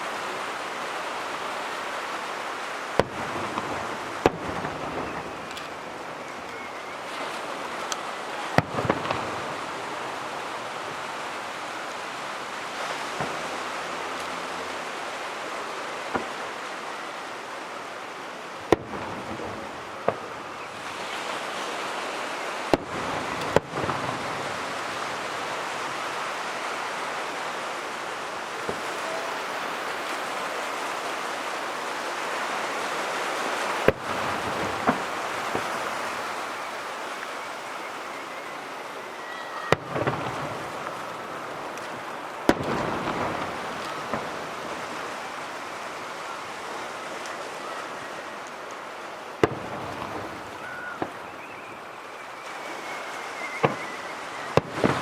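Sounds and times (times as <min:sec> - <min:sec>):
continuous rushing hiss: 0:00.0 - 0:55.0
firework shells booming: 0:03.0 - 0:05.8, 0:33.8 - 0:36.4, 0:39.7 - 0:45.0.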